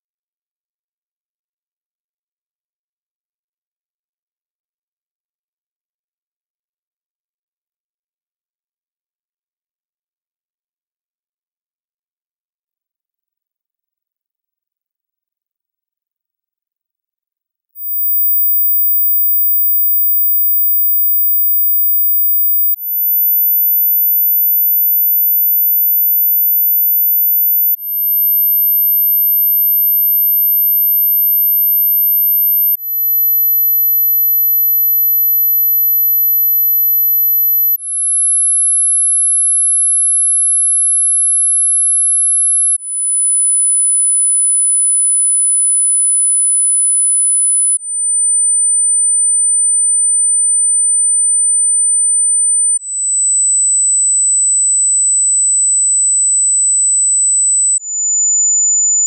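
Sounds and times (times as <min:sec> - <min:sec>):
high pure sine tones: 0:17.8 - 0:37.8, 0:51.6 - 0:59.0.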